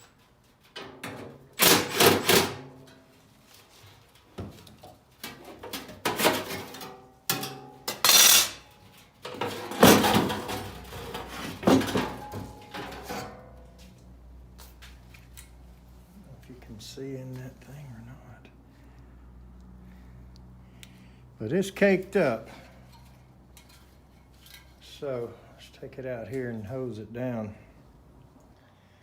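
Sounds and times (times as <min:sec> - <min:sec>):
metal parts clanking and scraping: 0:00.8 - 0:02.7, 0:05.3 - 0:13.5.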